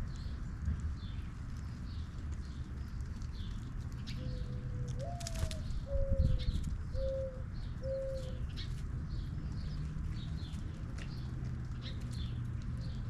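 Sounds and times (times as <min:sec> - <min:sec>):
small birds chirping: 0:00.0 - 0:13.0
dove cooing: 0:04.2 - 0:08.5.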